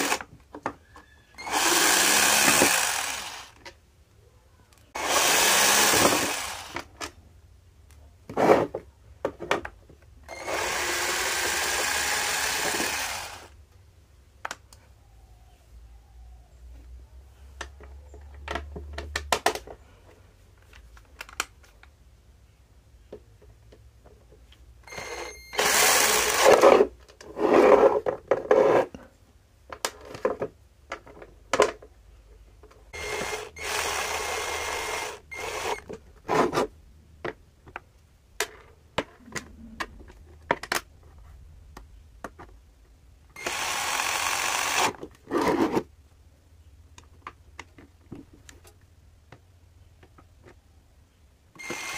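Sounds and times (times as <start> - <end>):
cordless drill running: 0.0 - 0.2, 1.4 - 3.6, 5.0 - 6.8, 10.3 - 13.6, 24.9 - 26.6, 33.0 - 35.8, 43.4 - 45.0, 51.6 - 51.9
drill trigger or chuck clicks: 43.4 - 45.0, 51.6 - 51.9.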